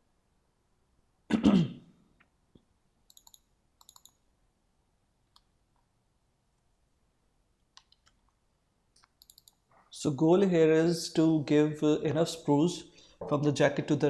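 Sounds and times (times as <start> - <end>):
person coughing: 1.3 - 2.0
computer mouse clicks: 3.0 - 4.2, 7.6 - 9.8.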